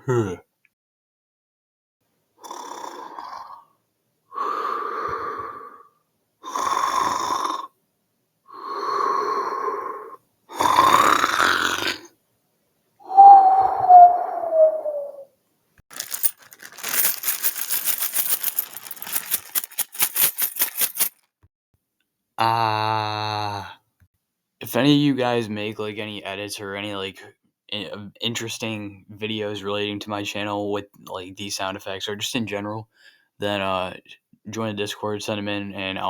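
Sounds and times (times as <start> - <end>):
breathy vocal noises: 0.0 - 0.4, 22.4 - 23.8
rapid rattling clicks: 15.9 - 21.2.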